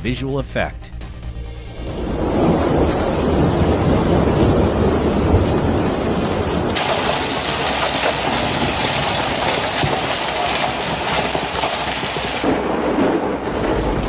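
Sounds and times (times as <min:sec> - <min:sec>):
hail pelting hard surfaces: 0:01.8 - 0:13.0.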